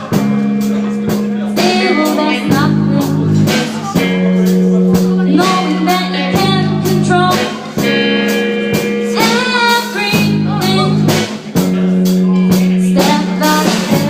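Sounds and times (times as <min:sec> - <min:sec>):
live rock band playing: 0:00.0 - 0:14.0
person singing: 0:01.3 - 0:08.0, 0:09.0 - 0:11.7, 0:12.4 - 0:14.0.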